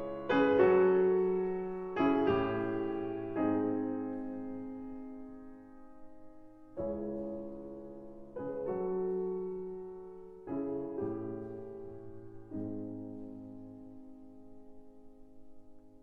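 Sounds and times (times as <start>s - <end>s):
slow piano chords: 0.0s - 16.0s.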